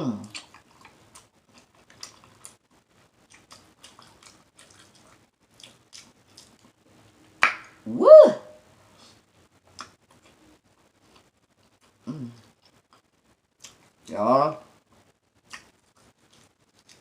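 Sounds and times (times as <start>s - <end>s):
person shouting woo: 7.9s - 8.6s
wet mouth clicks and lip smacks: 9.7s - 10.3s, 15.4s - 17.0s.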